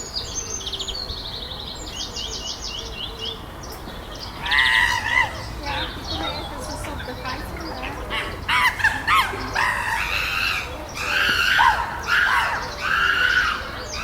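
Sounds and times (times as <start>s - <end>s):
chimpanzees screaming: 4.3s - 14.0s.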